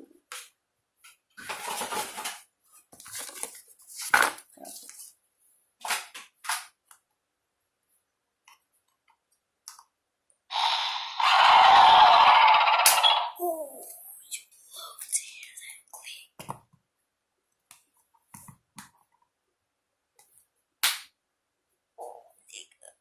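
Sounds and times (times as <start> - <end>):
plastic toy clacks and rustles: 1.4 - 5.0.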